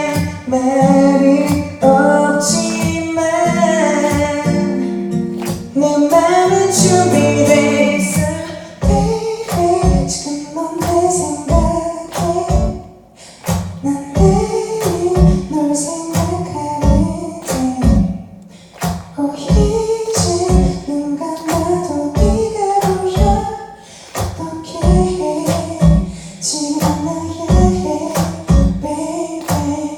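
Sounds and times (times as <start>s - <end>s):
live band playing: 0.0s - 10.2s, 10.8s - 15.5s, 16.2s - 20.8s, 21.5s - 29.6s
person singing: 0.0s - 13.0s, 13.8s - 18.3s, 19.1s - 29.9s
drum beat: 2.4s - 10.2s, 10.8s - 12.8s, 13.5s - 15.5s, 16.1s - 18.2s, 18.8s - 20.8s, 21.5s - 23.5s, 24.2s - 26.2s, 26.8s - 28.9s.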